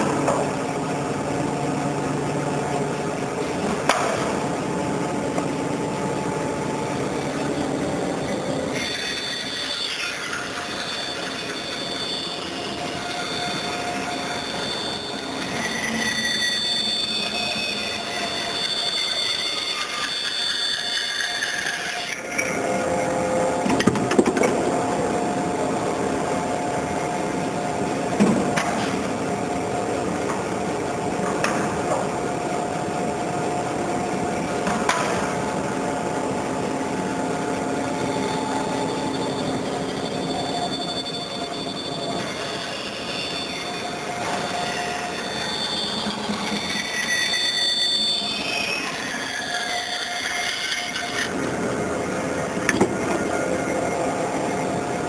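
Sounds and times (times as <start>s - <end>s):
band saw machine hum: 0.0s - 23.7s, 35.5s - 55.0s.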